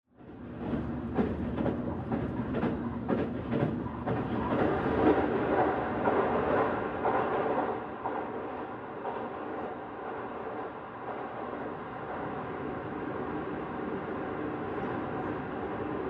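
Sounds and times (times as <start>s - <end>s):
train rumbling on rails: 0.1s - 16.0s
train wheels clicking: 0.5s - 12.4s.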